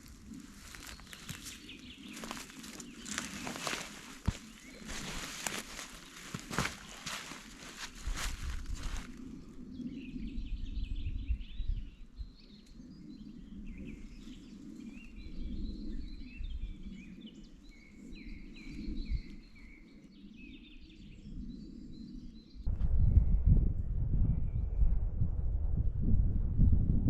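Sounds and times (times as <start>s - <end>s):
small birds chirping: 0.0s - 22.6s
low rumbling background: 22.7s - 27.0s.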